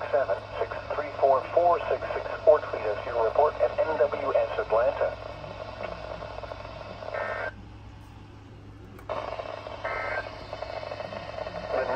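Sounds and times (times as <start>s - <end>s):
radio hiss: 0.0s - 7.6s, 9.1s - 11.9s.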